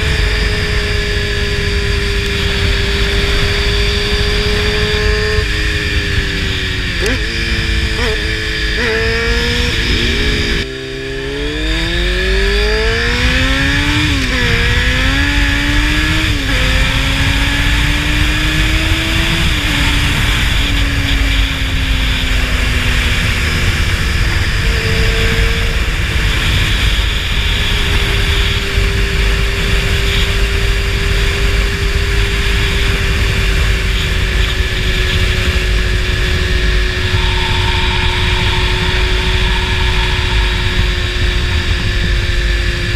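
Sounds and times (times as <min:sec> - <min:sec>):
motorcycle engine accelerating: 0:00.0 - 0:42.9
wind noise on microphone: 0:00.0 - 0:42.9.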